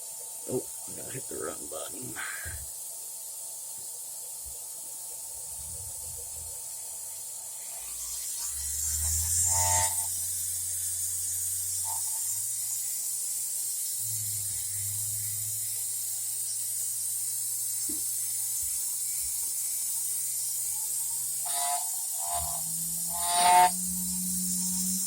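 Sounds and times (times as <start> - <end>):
spindle high hiss: 0.0 - 25.0
drive motors humming: 20.8 - 25.0.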